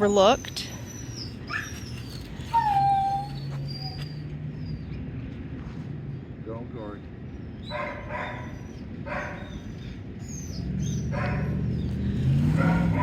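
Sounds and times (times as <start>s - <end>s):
dog barking: 7.7s - 9.7s, 11.0s - 13.0s.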